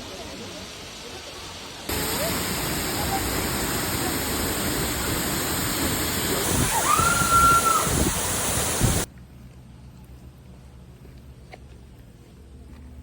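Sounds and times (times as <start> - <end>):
waterfall rushing water: 1.9 - 9.1.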